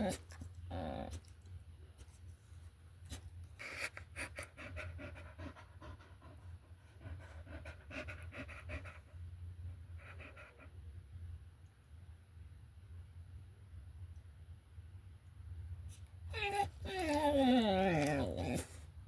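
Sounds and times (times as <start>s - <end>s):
dog panting: 3.6s - 9.2s.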